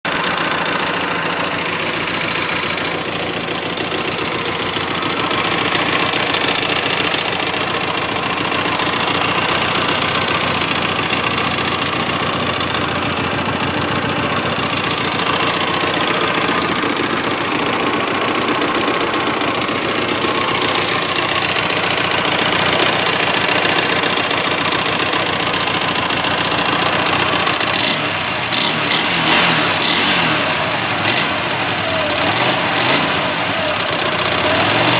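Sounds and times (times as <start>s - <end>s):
fast clattering engine tick: 0.0s - 34.9s
motorcycle engine idling: 0.0s - 34.9s.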